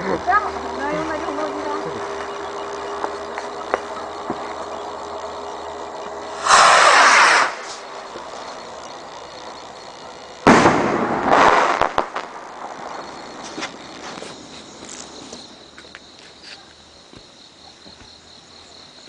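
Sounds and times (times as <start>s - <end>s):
firework crackling: 0.0s - 15.6s
firework bang: 6.3s - 7.9s, 10.4s - 13.7s.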